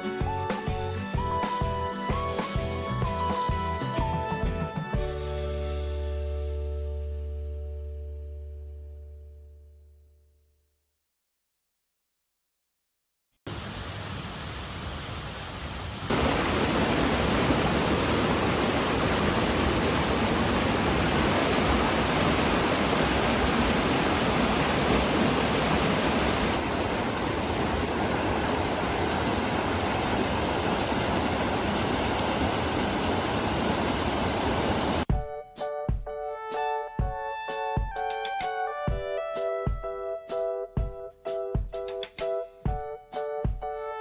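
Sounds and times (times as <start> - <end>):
stream water rushing: 13.5 - 35.1.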